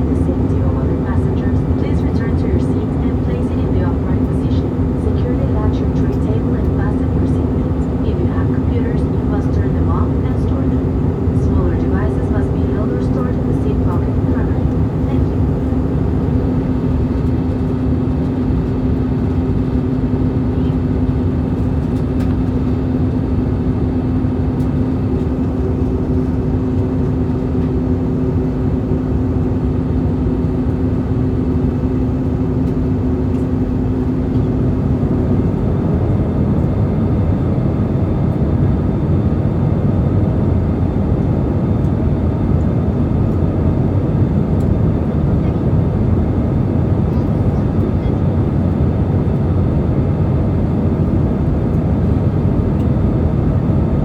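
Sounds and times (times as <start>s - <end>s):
aircraft cabin airflow rushing: 0.0s - 20.0s
jet engines: 0.0s - 54.0s.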